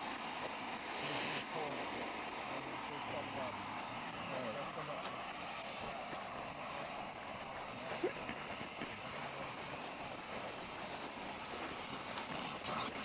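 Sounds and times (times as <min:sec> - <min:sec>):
insects chirring: 0:00.0 - 0:13.0
outdoor background noise: 0:00.0 - 0:13.0
faint ticks: 0:10.3 - 0:13.0.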